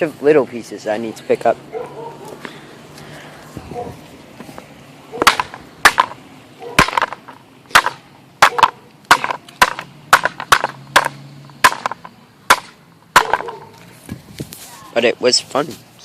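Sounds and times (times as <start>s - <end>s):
plastic pieces cracking when struck: 5.2s - 6.2s, 6.8s - 13.6s.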